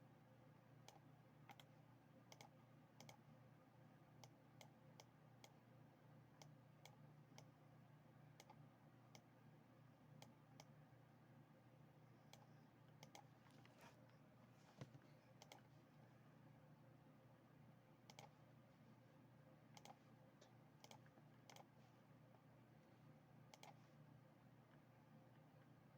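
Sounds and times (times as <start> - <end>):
low steady hum: 0.0 - 25.9
computer mouse clicks: 0.8 - 3.2, 4.2 - 5.6, 6.4 - 7.6, 8.4 - 9.3, 10.2 - 10.8, 12.3 - 13.4, 14.8 - 15.7, 18.1 - 18.4, 19.8 - 21.8, 23.5 - 23.8.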